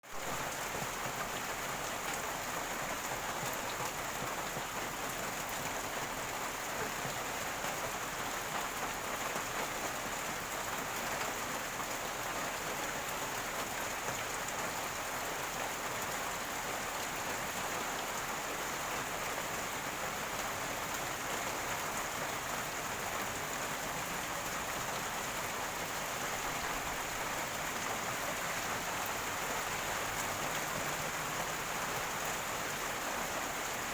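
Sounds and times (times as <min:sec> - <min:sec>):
steady rain falling: 0:00.0 - 0:33.9.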